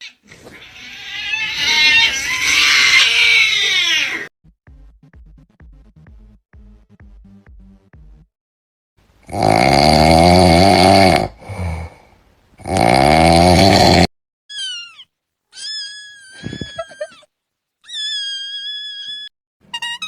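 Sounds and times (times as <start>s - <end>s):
cat yowling: 0.0s - 4.3s, 14.5s - 20.0s
high-pitched cat meows: 0.0s - 4.3s, 14.5s - 17.3s, 17.9s - 20.0s.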